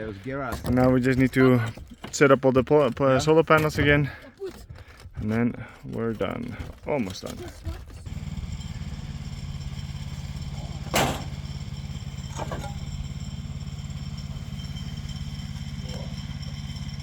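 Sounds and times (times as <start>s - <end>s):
engine running: 7.9s - 17.0s.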